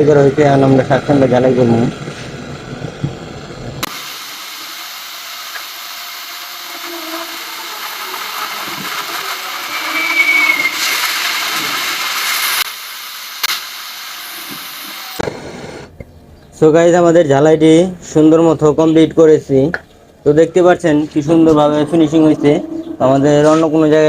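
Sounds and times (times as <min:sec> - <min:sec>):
gas torch hissing: 0:03.3 - 0:15.9.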